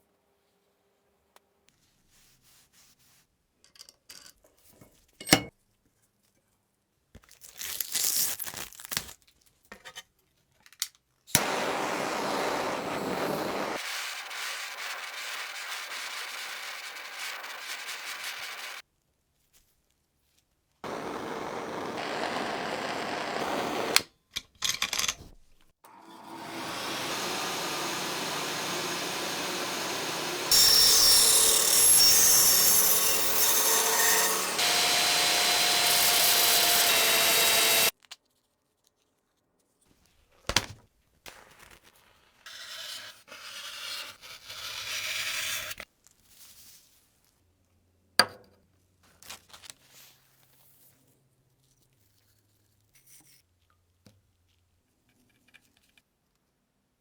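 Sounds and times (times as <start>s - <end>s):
motorised workshop tool running: 11.4s - 18.8s, 20.8s - 24.0s, 25.9s - 33.6s.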